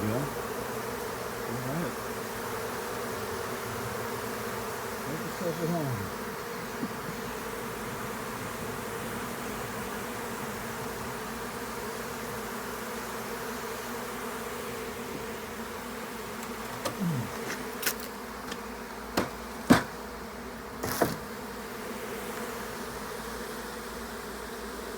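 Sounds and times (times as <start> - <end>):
buzz falling in pitch: 0.0 - 24.9
honeybees buzzing: 0.0 - 24.9
sharp clicks or knocks: 19.2 - 20.0.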